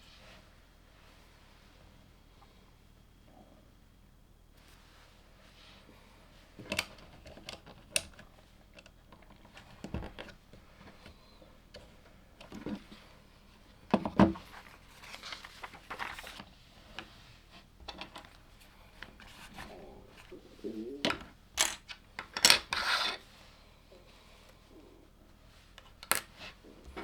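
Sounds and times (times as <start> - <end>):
rustling: 9.2 - 21.4
plastic pieces clicking together: 21.6 - 22.7.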